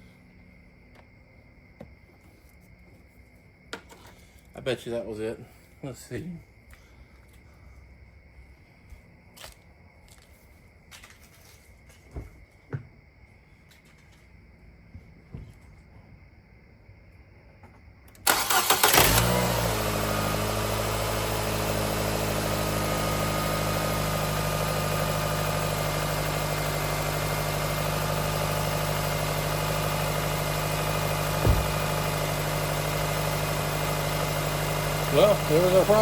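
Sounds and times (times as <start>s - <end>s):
car engine starting and idling: 18.1s - 36.0s.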